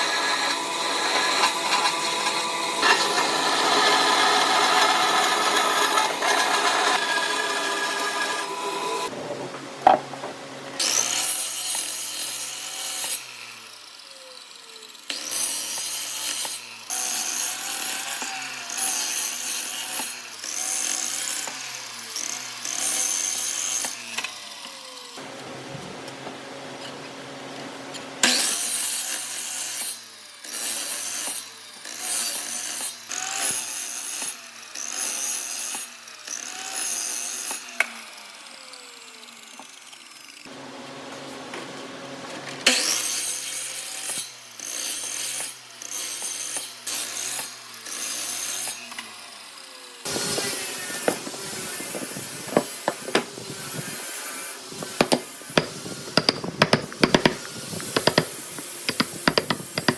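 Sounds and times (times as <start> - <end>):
tool rasping wood: 0.1 - 9.1, 50.1 - 59.9
sharp taps and clicks: 54.7 - 59.9.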